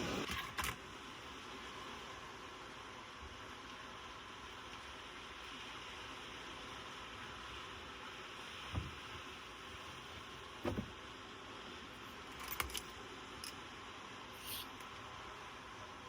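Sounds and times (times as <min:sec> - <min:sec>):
steady background hiss: 0:00.0 - 0:16.0
light knocks and clicks: 0:10.6 - 0:11.0.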